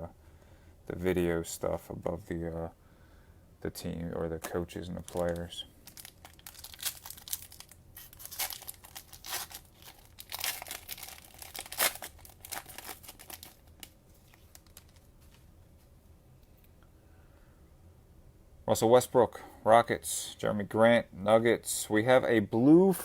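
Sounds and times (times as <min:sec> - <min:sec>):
plastic wrapper tearing and crinkling: 0:05.0 - 0:15.4.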